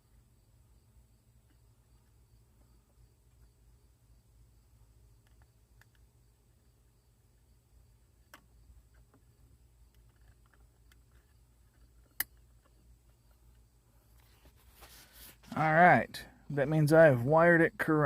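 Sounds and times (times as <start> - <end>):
small plastic clicks: 5.2 - 6.2, 8.2 - 13.7.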